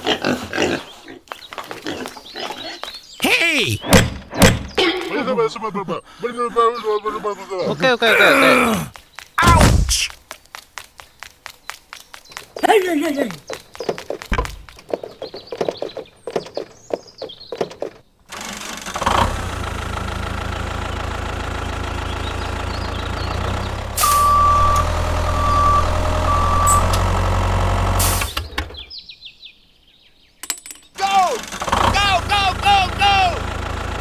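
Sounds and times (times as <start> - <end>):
tractor engine running: 18.3 - 28.9, 31.0 - 34.0
reversing alarm beeps: 24.0 - 27.2.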